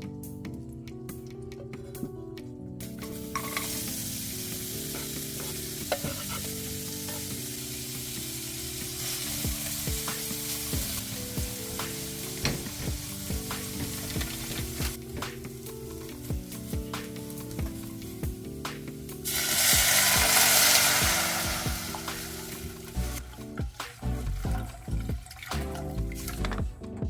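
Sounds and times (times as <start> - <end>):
food sizzling in a frying pan: 2.8 - 24.4
utensil scraping a pan: 4.7 - 7.5.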